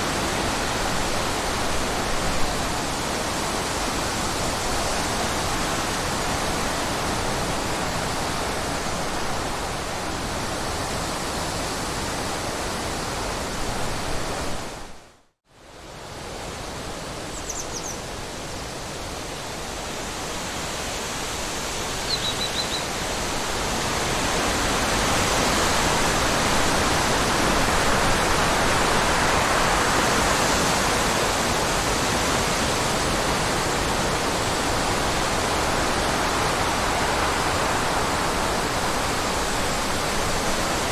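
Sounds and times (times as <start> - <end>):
rushing water: 0.0 - 40.9
faint high chirps: 22.1 - 22.9.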